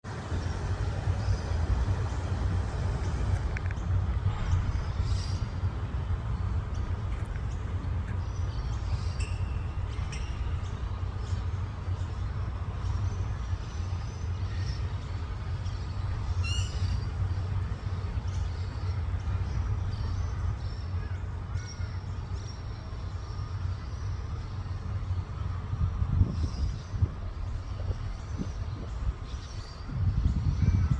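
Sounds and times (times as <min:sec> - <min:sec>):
steady low rumble: 0:00.0 - 0:30.9
birds chirping: 0:00.1 - 0:22.7.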